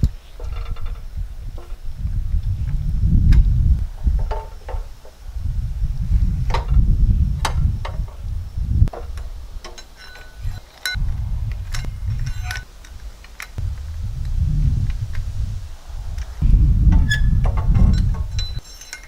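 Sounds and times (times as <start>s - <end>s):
low rumble: 0.0s - 9.6s, 10.4s - 18.6s
metal spikes clinking: 8.9s - 11.0s, 11.6s - 13.6s, 17.0s - 19.0s.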